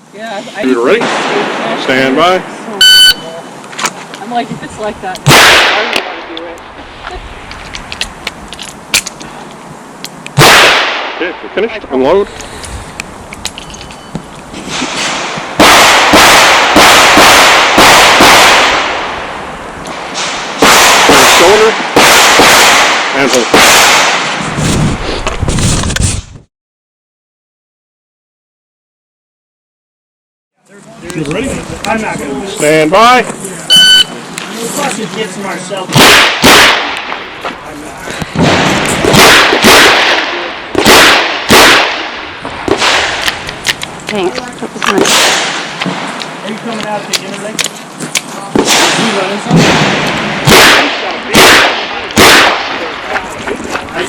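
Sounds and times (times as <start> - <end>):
handgun shots with echo: 36.0 - 37.1, 38.4 - 42.1, 48.6 - 52.8.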